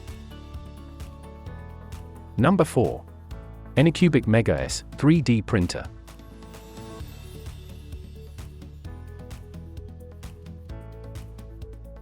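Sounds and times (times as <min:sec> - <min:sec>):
music with held notes and light beat: 0:00.0 - 0:12.0.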